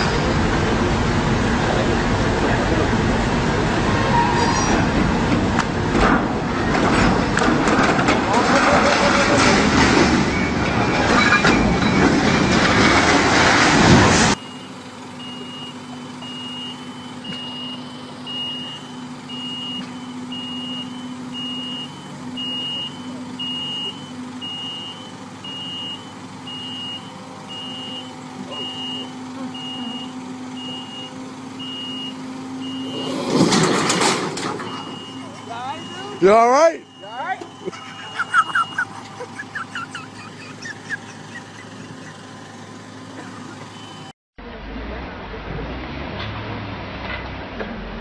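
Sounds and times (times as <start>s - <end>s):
vehicle reversing alarm beeping: 10.1s - 13.0s, 14.3s - 44.1s
low engine hum: 36.8s - 48.0s.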